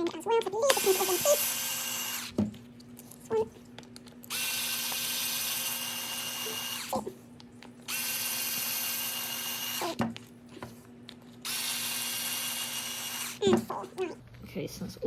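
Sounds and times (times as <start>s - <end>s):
cordless drill motor whining: 0.7s - 2.4s, 4.3s - 7.0s, 7.9s - 10.0s, 11.4s - 13.7s.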